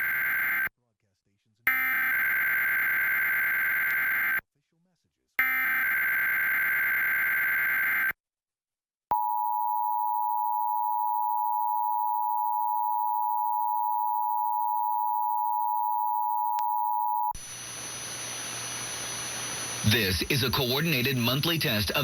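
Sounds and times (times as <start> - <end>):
faint hiss: 17.4 - 21.5.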